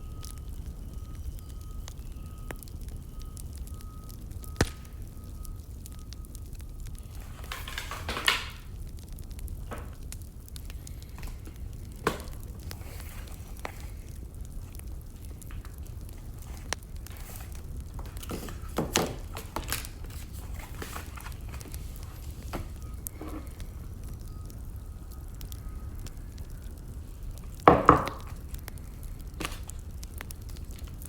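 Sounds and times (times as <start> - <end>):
fire crackles and pops: 0.0 - 31.0
wood fire rumble: 0.0 - 31.0
loud snaps: 4.6 - 4.9.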